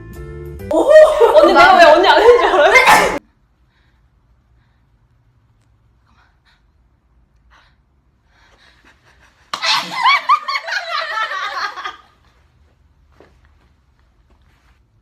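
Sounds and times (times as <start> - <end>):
high-pitched laughter: 0.7 - 3.2
woman sneezing: 2.7 - 3.2.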